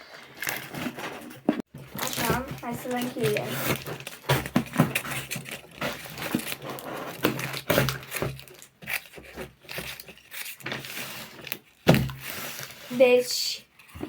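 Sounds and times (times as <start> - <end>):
packaging crinkling: 1.8 - 12.8.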